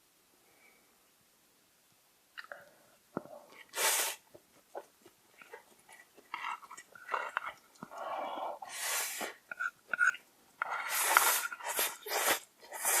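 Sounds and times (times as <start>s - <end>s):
mouth clicks and smacks eating: 2.3s - 3.7s, 4.3s - 8.1s, 9.4s - 12.0s
short loud hiss: 3.7s - 4.2s, 10.9s - 13.0s
breathy noises: 5.4s - 13.0s.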